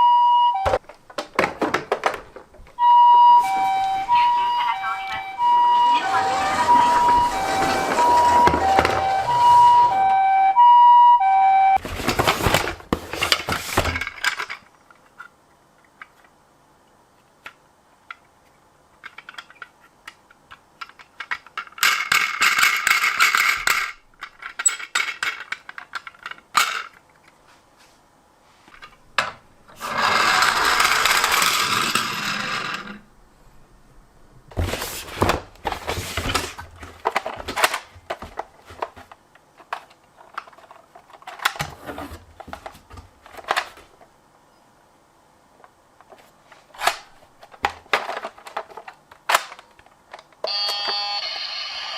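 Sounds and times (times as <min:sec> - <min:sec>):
two-tone ambulance siren: 0:00.0 - 0:00.8, 0:02.8 - 0:11.8, 0:50.5 - 0:51.9
handling clicks and knocks: 0:00.6 - 0:02.8, 0:11.8 - 0:16.4, 0:17.3 - 0:27.4, 0:34.5 - 0:44.1, 0:45.6 - 0:50.5
toy cars rolling and rattling: 0:01.1 - 0:02.5, 0:03.7 - 0:10.1, 0:11.9 - 0:16.3, 0:19.0 - 0:27.4, 0:28.8 - 0:33.1, 0:34.6 - 0:44.0, 0:46.0 - 0:51.9.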